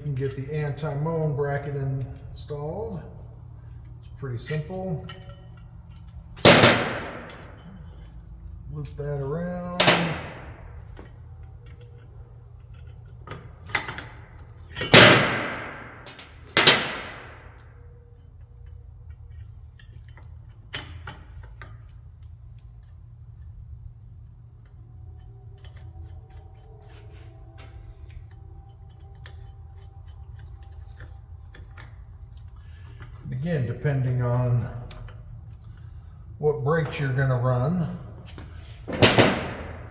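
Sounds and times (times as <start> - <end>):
tools tapping on metal: 3.7 - 15.2
sharp metal clanks: 4.0 - 8.0, 9.8 - 11.1, 13.7 - 17.7, 38.8 - 39.9.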